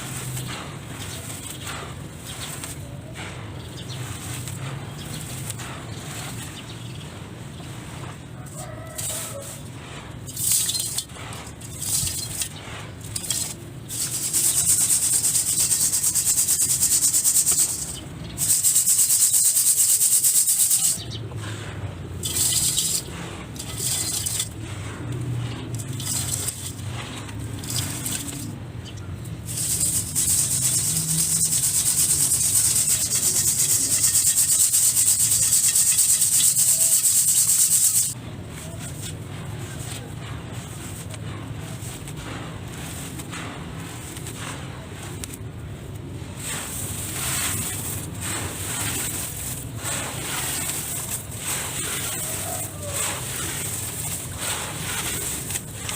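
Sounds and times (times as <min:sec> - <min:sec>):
dry material crumbling and rustling: 0:25.2 - 0:28.6, 0:38.5 - 0:55.9.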